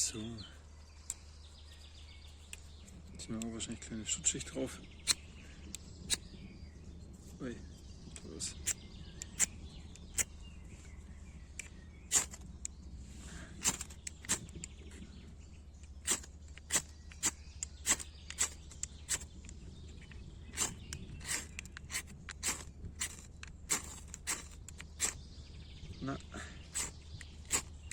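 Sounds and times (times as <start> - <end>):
striker scraping fire-steel rod: 11.6 - 14.8, 15.8 - 25.3, 26.6 - 27.9.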